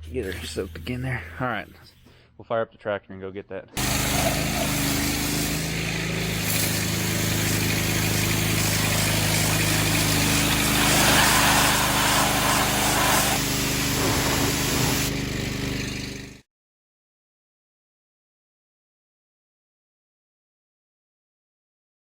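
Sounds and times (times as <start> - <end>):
engine running steadily: 3.8 - 16.4
broad rushing noise: 10.0 - 15.2.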